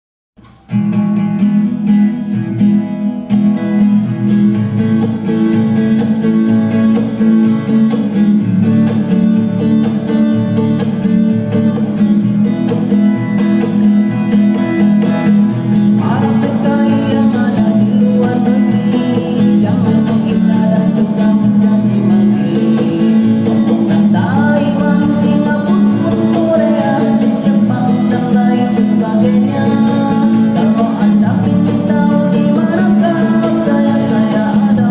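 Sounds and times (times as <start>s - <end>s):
guitar playing: 0.4s - 34.9s
man singing: 15.8s - 34.9s.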